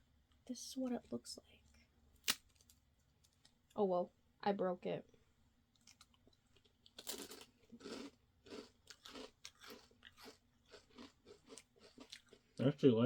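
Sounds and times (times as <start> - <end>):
biscuit crunching: 5.8 - 12.6.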